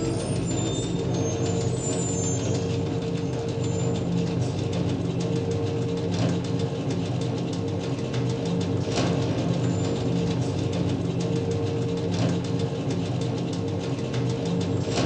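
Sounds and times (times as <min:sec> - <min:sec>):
short high squeaks: 0:00.0 - 0:04.0
conveyor belt humming: 0:00.0 - 0:15.0
rapid clicking and knocking: 0:00.0 - 0:15.0.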